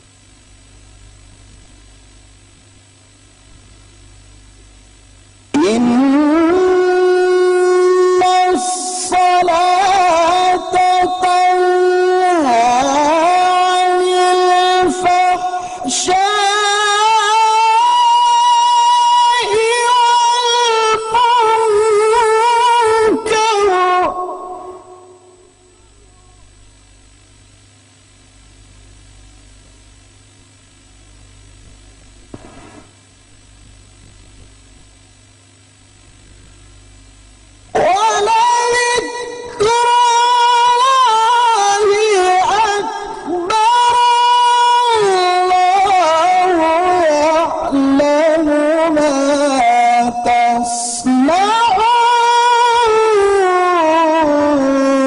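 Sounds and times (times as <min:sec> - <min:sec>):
low steady hum: 0:00.0 - 0:55.0
man chanting recitation: 0:05.5 - 0:26.5, 0:37.8 - 0:55.0.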